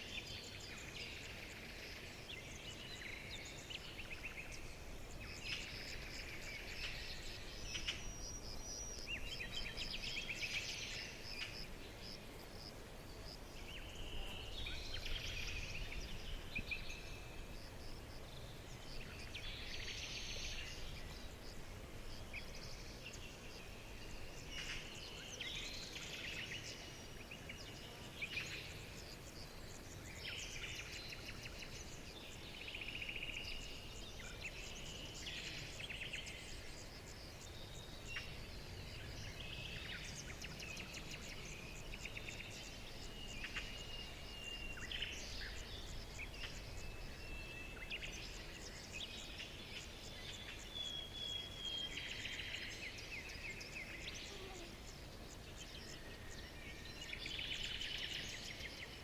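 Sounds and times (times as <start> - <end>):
birds chirping and trilling: 0.0 - 59.0.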